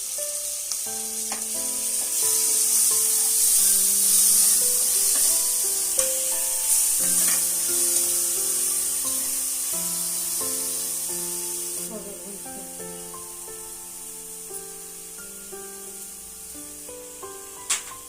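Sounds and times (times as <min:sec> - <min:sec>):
instrumental music: 0:00.0 - 0:18.0
paste sizzling in hot oil: 0:00.0 - 0:18.0
spatula clicking against pan: 0:01.3 - 0:02.2.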